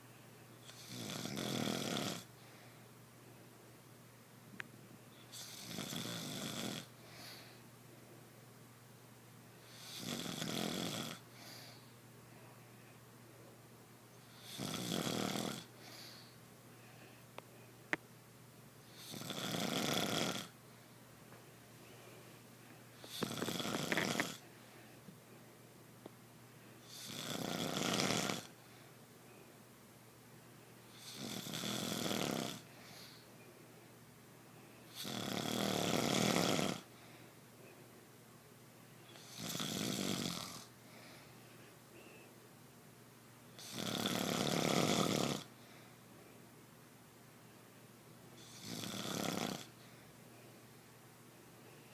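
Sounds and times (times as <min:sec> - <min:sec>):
person snoring: 0:00.6 - 0:02.3, 0:05.3 - 0:06.9, 0:09.7 - 0:11.2, 0:14.3 - 0:16.3, 0:18.9 - 0:20.6, 0:23.0 - 0:24.4, 0:26.8 - 0:28.6, 0:30.9 - 0:32.7, 0:34.9 - 0:36.9, 0:39.1 - 0:40.7, 0:43.6 - 0:45.5, 0:48.4 - 0:49.8.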